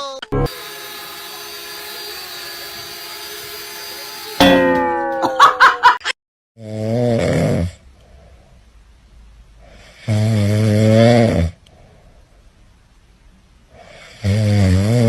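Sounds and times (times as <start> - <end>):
pet snoring: 6.6 - 7.8, 9.7 - 11.6, 13.8 - 15.0.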